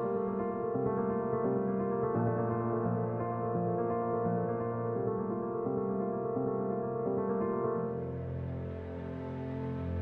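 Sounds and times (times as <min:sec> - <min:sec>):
soft sustained piano notes: 0:00.0 - 0:10.0.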